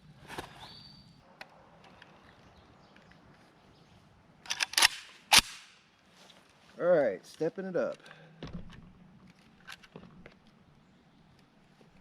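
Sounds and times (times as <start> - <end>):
rifle shots: 4.5 - 5.7.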